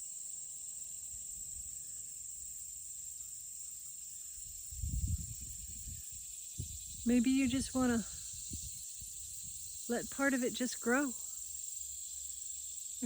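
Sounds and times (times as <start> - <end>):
insects buzzing: 0.0 - 13.0.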